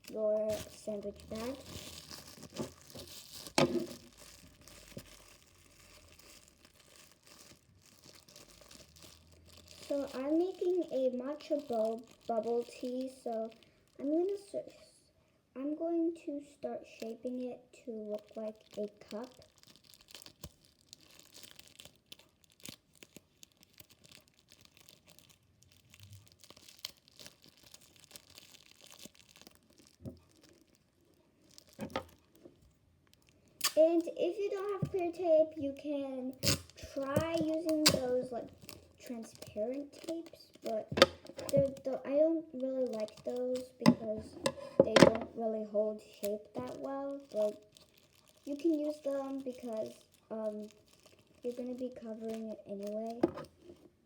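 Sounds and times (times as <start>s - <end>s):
plastic bag crinkling: 0.0s - 14.6s, 16.5s - 54.0s
tape being pulled and cut: 33.6s - 33.8s, 36.3s - 38.3s.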